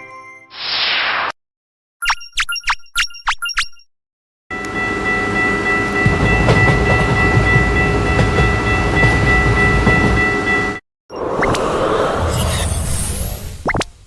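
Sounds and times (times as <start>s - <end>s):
train low rumble: 4.5s - 10.8s.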